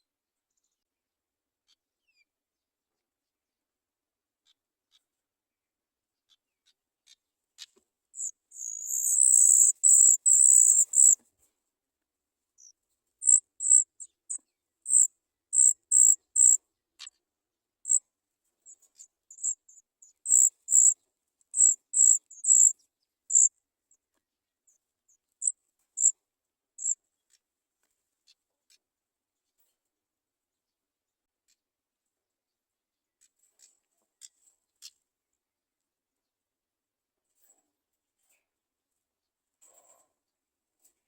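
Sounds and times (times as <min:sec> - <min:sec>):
nestlings begging chirps: 0:08.2 - 0:11.2, 0:13.2 - 0:14.2, 0:14.9 - 0:16.6, 0:19.3 - 0:21.0, 0:21.6 - 0:22.7.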